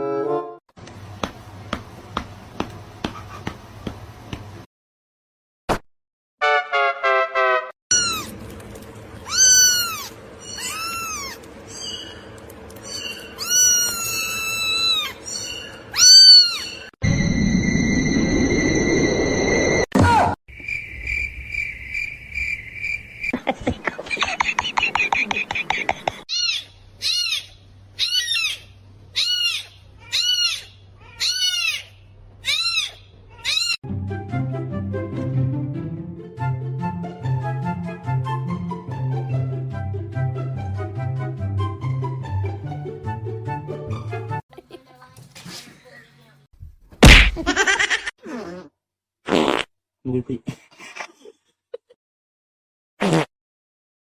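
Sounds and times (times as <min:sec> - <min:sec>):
cat meowing: 0:07.9 - 0:08.3, 0:09.2 - 0:12.0, 0:12.9 - 0:16.8, 0:29.2 - 0:33.8
kitten mewing: 0:07.9 - 0:08.3, 0:09.2 - 0:11.4, 0:13.0 - 0:15.2.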